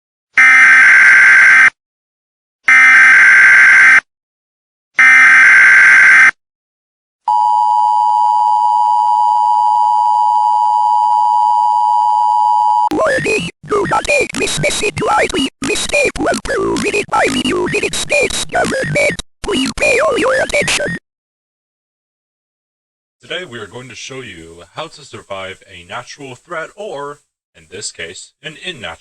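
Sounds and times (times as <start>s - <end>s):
digital data tone bursts: 12.8s - 21.0s
steady two-tone attention signal: 12.8s - 21.0s.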